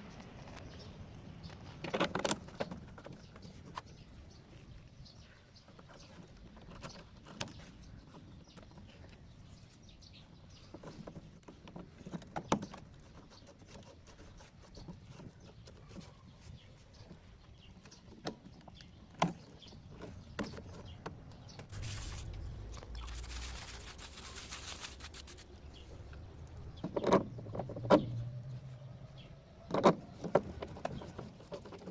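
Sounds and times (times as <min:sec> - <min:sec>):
rustling noise: 0:19.8 - 0:26.4.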